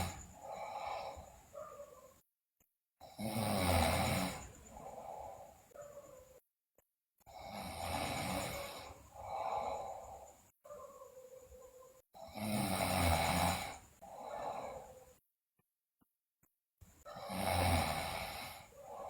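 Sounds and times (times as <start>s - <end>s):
girl snoring: 0.0s - 1.4s, 3.0s - 5.6s, 7.3s - 10.4s, 12.2s - 15.1s, 17.0s - 19.0s.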